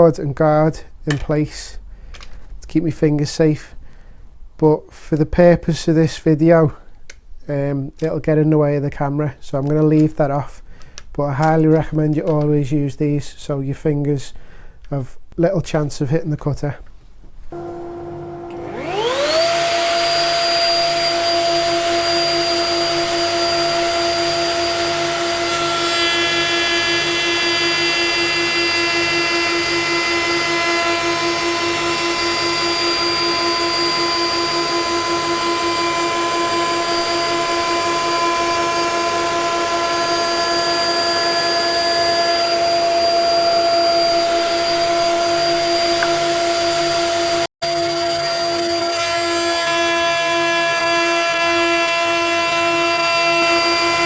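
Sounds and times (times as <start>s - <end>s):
router whining: 17.5s - 54.0s.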